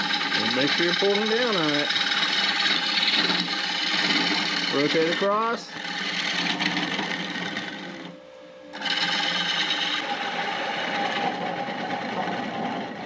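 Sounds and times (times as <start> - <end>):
gouge scraping spinning wood: 0.0 - 13.0
wood lathe running: 0.0 - 13.0.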